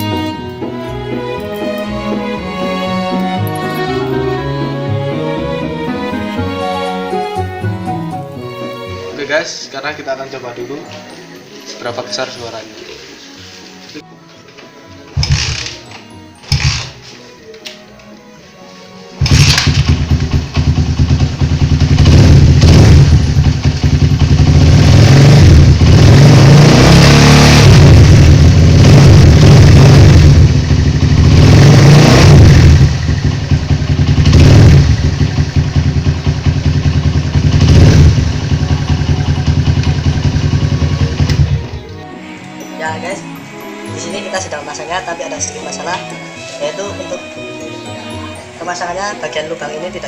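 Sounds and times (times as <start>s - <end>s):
motorcycle engine revving: 16.5s - 17.0s, 19.2s - 41.9s.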